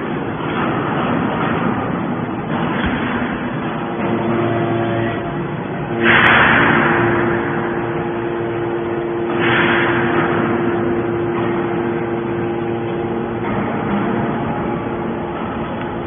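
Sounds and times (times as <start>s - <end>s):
steady machine hum: 0.0s - 16.0s
hydraulic hissing rush: 4.0s - 15.7s.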